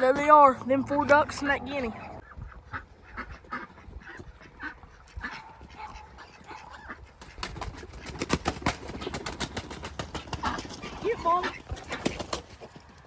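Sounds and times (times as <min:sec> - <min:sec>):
ducks calling: 0:00.0 - 0:13.0
guinea fowl calling: 0:01.8 - 0:08.2.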